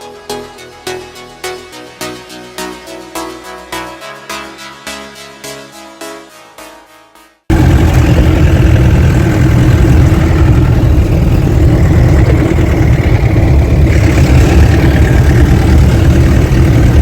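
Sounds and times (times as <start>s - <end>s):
jeep engine low rumble: 7.5s - 17.0s
road noise on dirt track: 7.5s - 17.0s.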